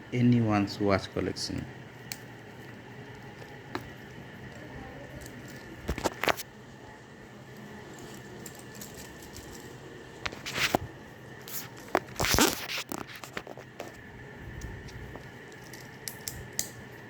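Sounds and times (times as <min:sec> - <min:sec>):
faint steady background noise: 0:00.0 - 0:17.0
handling scrapes and rustles: 0:07.6 - 0:14.1.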